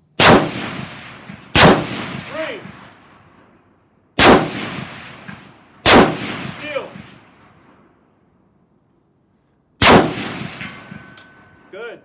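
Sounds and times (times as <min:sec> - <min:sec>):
rifle shots echoing: 0:00.2 - 0:03.6, 0:04.2 - 0:08.0, 0:09.8 - 0:11.7.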